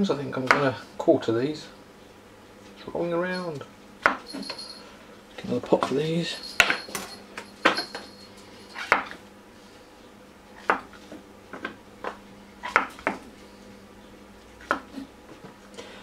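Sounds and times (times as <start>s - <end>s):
knife chopping on a board: 0.4s - 0.7s, 4.0s - 4.3s, 10.6s - 13.2s, 14.6s - 15.1s.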